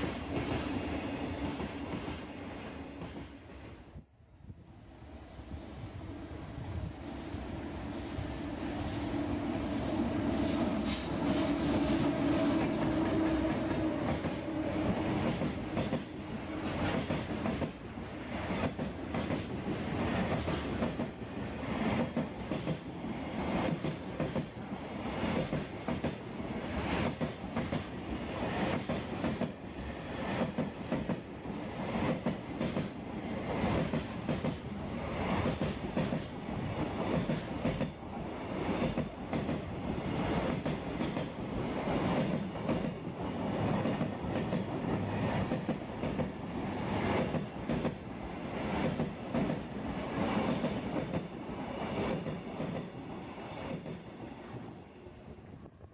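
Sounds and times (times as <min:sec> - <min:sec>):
locomotive hum: 0:04.9 - 0:17.6.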